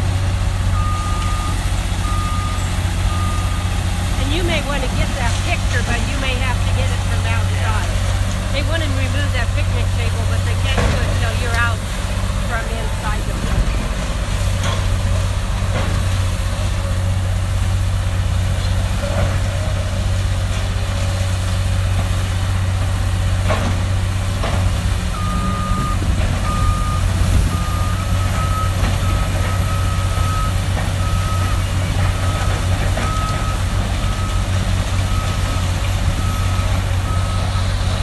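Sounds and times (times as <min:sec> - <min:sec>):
heavy machinery engine drone: 0:00.0 - 0:38.0
backup alarm beeping: 0:00.7 - 0:08.0, 0:25.1 - 0:37.8.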